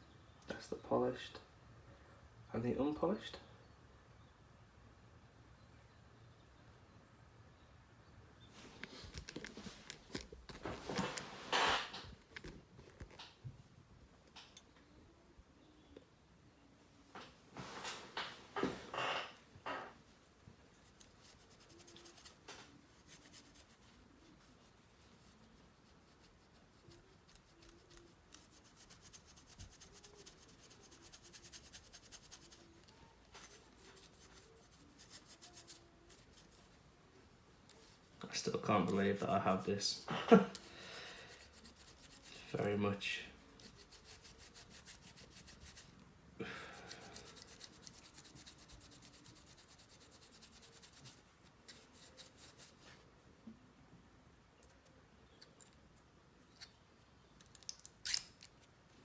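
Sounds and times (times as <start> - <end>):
crackly rustling and clicks: 8.6 - 13.5, 54.6 - 59.0
scraping rub: 20.8 - 36.8, 37.7 - 42.7, 43.5 - 53.0.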